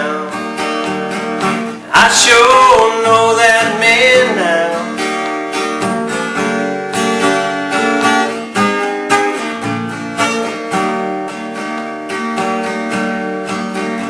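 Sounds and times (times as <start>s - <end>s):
acoustic guitar strumming: 0.0s - 14.0s.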